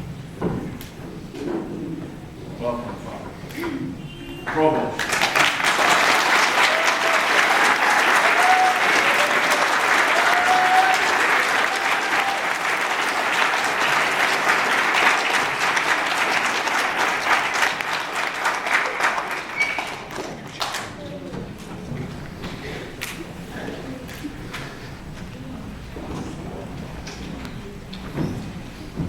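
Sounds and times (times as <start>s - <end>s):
congregation applauding: 4.5s - 21.0s.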